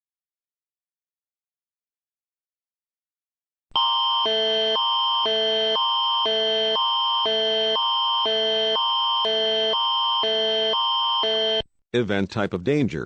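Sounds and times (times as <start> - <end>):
emergency alert tone: 3.8 - 11.7.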